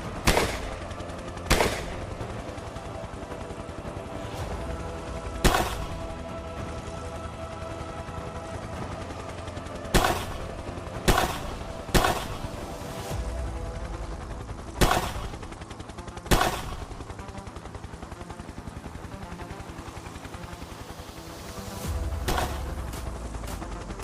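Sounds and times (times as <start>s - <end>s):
steady background drone: 0.0s - 24.0s
rifle shots: 0.2s - 0.7s, 1.5s - 2.0s, 5.4s - 5.9s, 10.0s - 10.4s, 11.1s - 12.4s, 14.8s - 15.3s, 16.3s - 16.9s.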